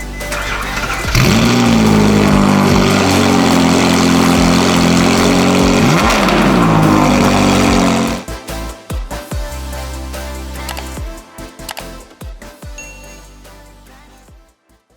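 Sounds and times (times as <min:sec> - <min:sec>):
sports car engine revving: 0:00.4 - 0:08.3.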